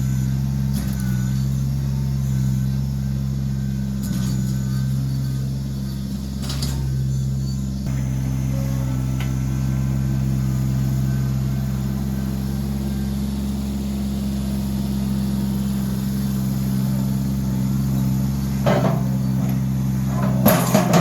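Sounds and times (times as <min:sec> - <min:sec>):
engine idling: 0:00.0 - 0:21.0.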